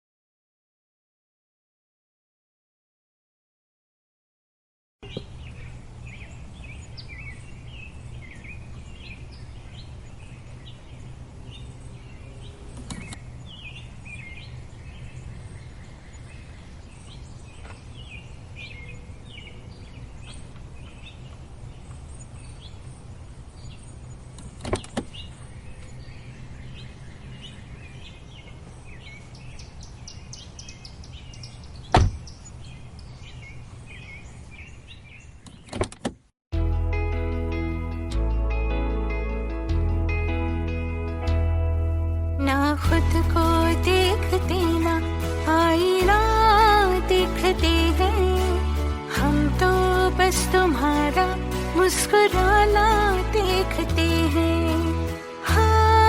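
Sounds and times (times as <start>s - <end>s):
birds chirping: 5.0s - 35.9s.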